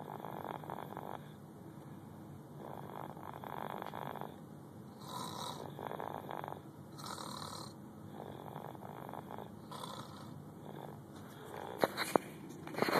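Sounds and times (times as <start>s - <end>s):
man snoring: 0.0s - 1.3s, 2.6s - 4.4s, 5.0s - 11.8s.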